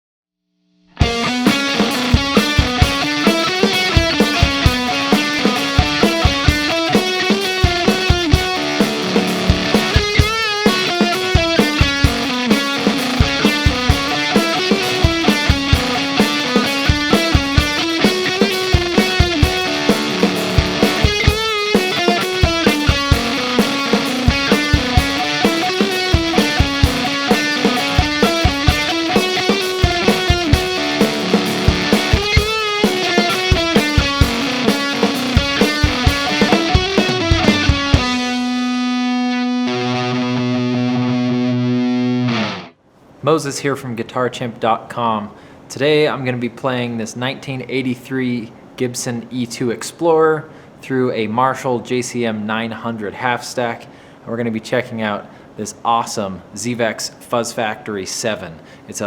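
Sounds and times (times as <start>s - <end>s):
fuzz electric guitar riff: 0.9s - 42.8s
drum kit: 1.0s - 42.6s.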